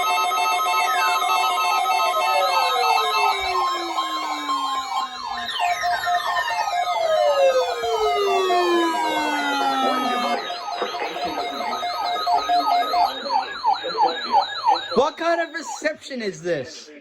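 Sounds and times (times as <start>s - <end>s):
steady alarm beeping: 0.0s - 16.4s
falling electronic sweeps: 2.1s - 15.8s
high warbling tone: 2.6s - 15.9s.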